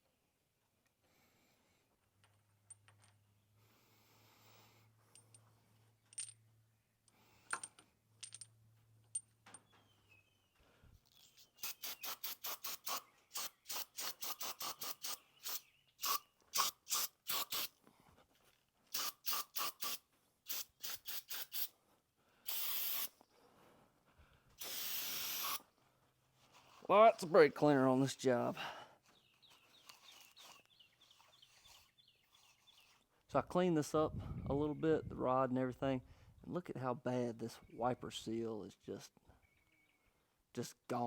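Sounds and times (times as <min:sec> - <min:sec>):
aerosol spray hissing: 0:11.6 - 0:17.7, 0:19.0 - 0:21.7, 0:22.5 - 0:23.1, 0:24.6 - 0:25.6.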